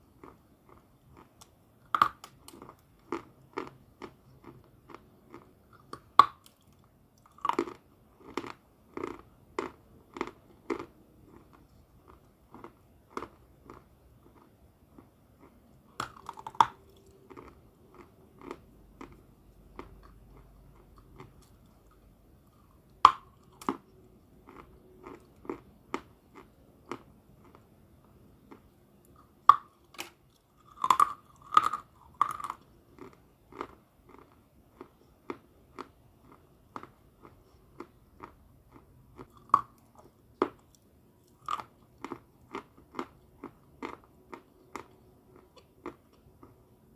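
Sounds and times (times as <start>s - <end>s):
person chewing crunchy chalk: 0.1s - 27.7s, 28.4s - 46.8s.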